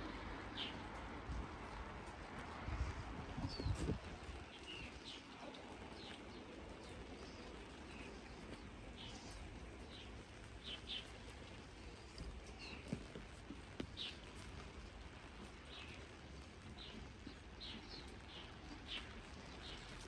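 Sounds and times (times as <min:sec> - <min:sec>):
rain hissing: 0:00.0 - 0:20.0
small birds chirping: 0:00.1 - 0:01.1, 0:01.7 - 0:20.0.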